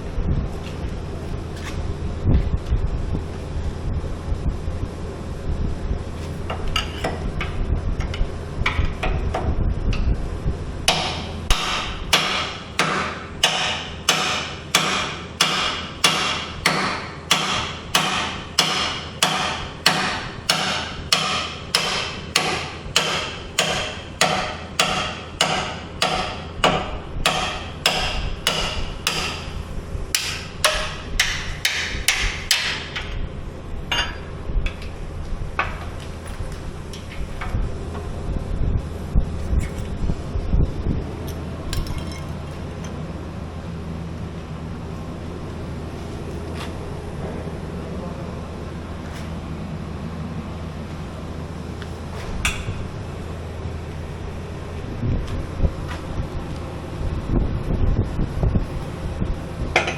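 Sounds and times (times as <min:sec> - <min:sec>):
hammer striking metal: 0:10.9 - 0:29.5, 0:30.1 - 0:33.2, 0:52.4 - 0:52.8.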